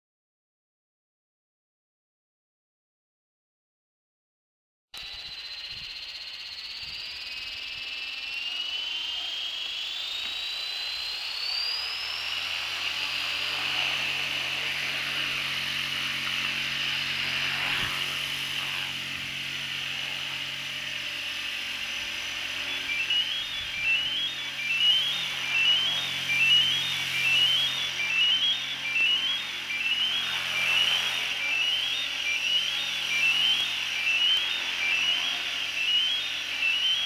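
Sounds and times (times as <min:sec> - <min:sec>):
rising stepped chirps: 0:05.0 - 0:13.2, 0:22.4 - 0:37.0
high electronic alarm tone: 0:05.0 - 0:37.0.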